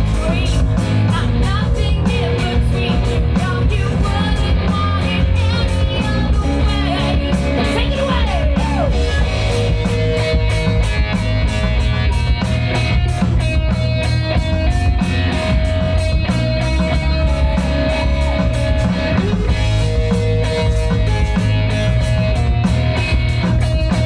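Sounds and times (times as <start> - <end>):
drum kit beat: 0.0 - 24.0
lead guitar with bends: 0.0 - 24.0.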